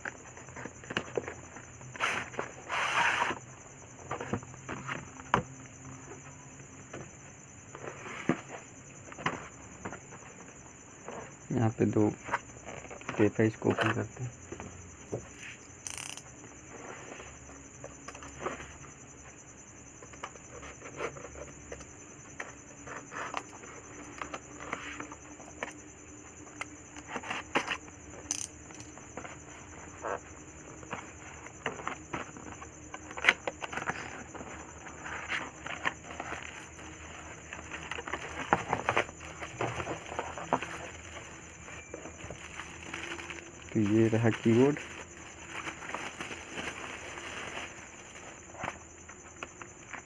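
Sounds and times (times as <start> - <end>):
packaging rustling and crinkling: 33.1 - 50.0.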